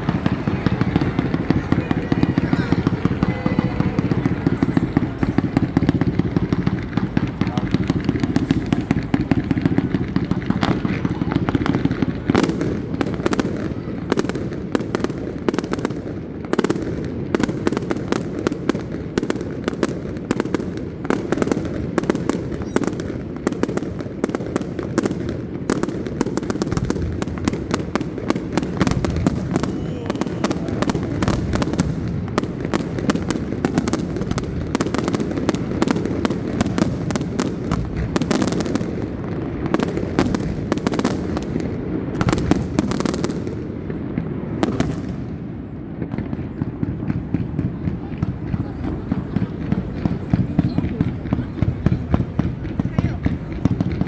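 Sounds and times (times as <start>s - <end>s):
fireworks bangs and crackles: 0.0s - 54.0s.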